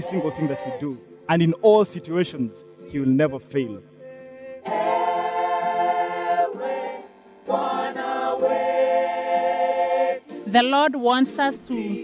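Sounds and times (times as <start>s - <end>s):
choir singing held chords: 0.0s - 2.0s, 3.9s - 10.4s, 11.6s - 12.0s.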